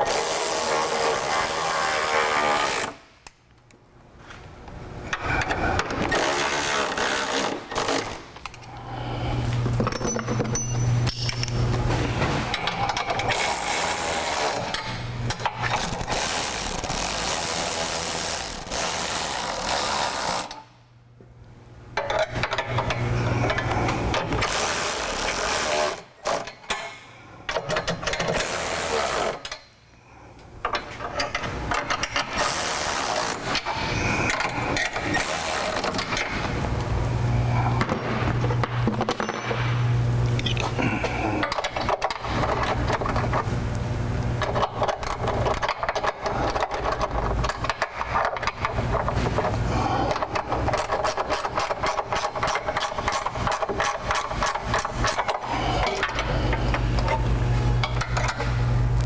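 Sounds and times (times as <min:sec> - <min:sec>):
ratchet wrench tightening bolts: 0:50.1 - 0:56.3.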